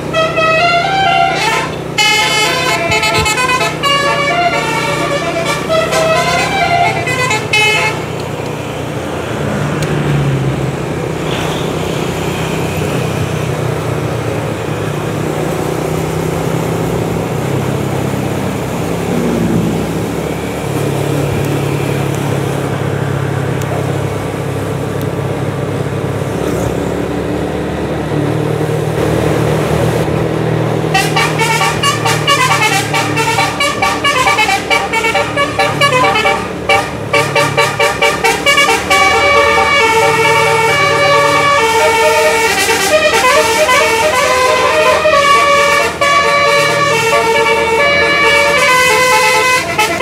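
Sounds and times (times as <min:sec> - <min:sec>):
musical air horn: 0:00.0 - 0:08.2, 0:30.9 - 0:50.0
bus engine running: 0:00.0 - 0:50.0
road traffic noise: 0:00.0 - 0:50.0.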